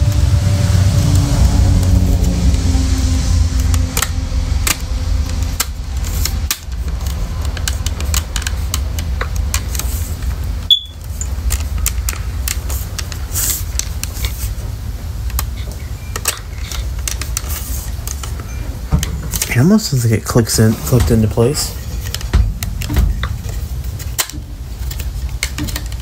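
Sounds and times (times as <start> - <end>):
steady low rumble: 0.0 - 26.0
plastic clicks and handling: 3.6 - 14.6, 15.2 - 19.8, 21.0 - 26.0.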